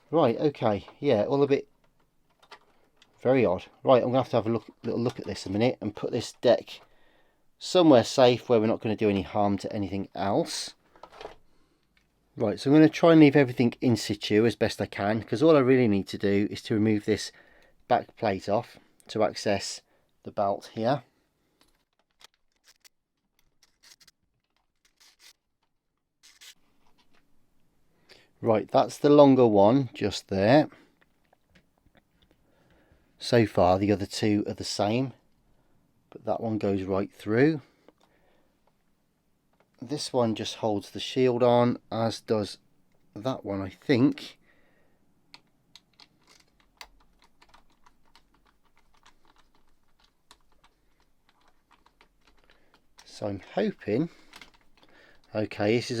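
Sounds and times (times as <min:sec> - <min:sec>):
screwdriver clicks and scrapes: 0:22.0 - 0:27.0.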